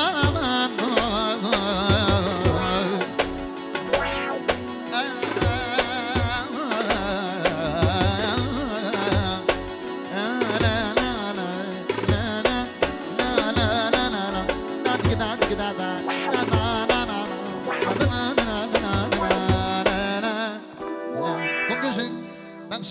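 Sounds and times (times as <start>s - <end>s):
drum beat with bass pulses: 0.0s - 20.2s.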